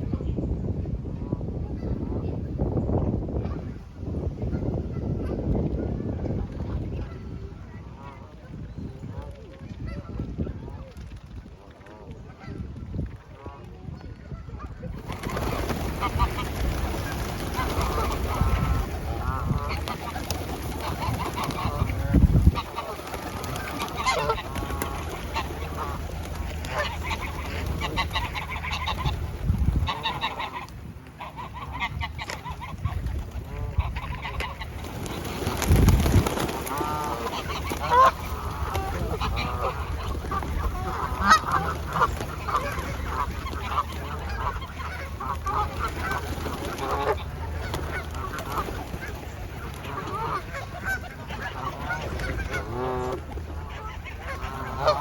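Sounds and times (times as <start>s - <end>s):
geese honking: 14.4s - 35.5s, 36.2s - 55.0s.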